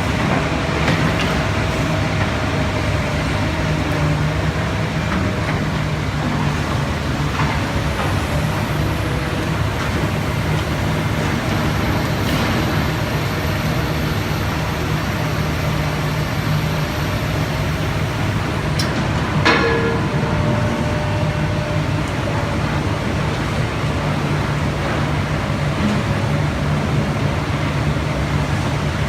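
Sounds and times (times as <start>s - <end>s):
excavator diesel engine running: 0.0s - 29.0s.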